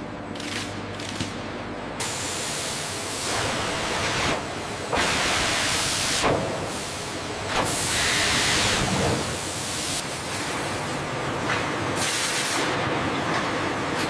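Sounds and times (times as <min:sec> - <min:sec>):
industrial machinery hissing: 0:02.0 - 0:10.9.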